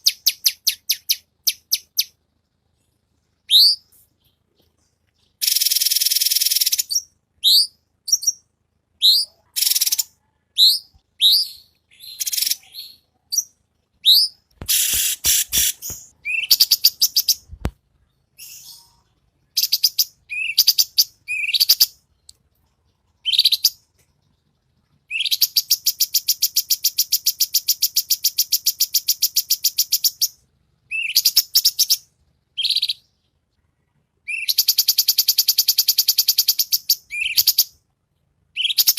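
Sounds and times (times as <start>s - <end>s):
bird whistling and trilling: 3.5s - 4.0s, 5.4s - 8.4s, 9.0s - 17.5s, 18.4s - 18.9s, 19.6s - 22.0s, 25.1s - 32.0s, 32.6s - 33.1s, 34.3s - 37.7s, 38.6s - 38.9s.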